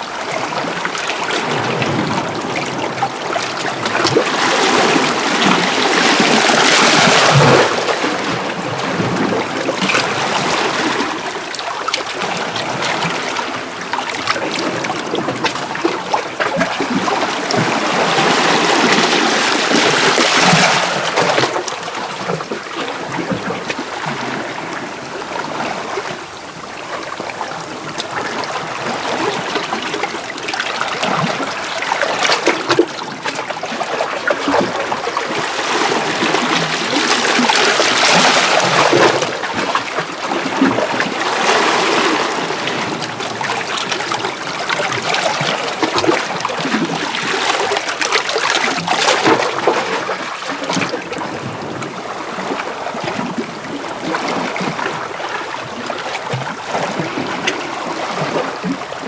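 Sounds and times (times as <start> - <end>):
water trickling and splashing: 0.1 - 59.0
small waves washing over rocks: 0.2 - 26.2.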